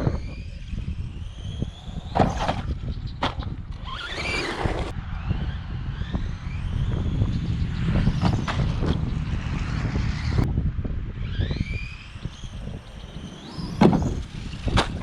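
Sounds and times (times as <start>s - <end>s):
electric motor whining: 0.0s - 15.0s
wind on microphone: 0.0s - 15.0s
tyres rumbling: 1.5s - 5.1s, 11.2s - 15.0s.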